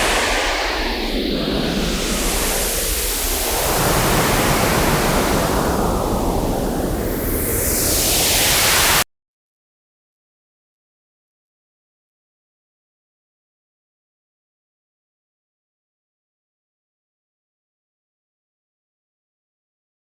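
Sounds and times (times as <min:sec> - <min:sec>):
dense hiss with shifting sweeps: 0:00.0 - 0:09.0.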